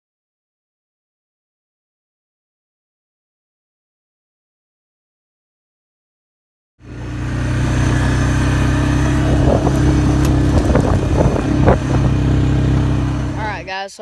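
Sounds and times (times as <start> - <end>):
vehicle engine and road noise: 6.8 - 13.8
knocks and rattles: 9.1 - 13.6.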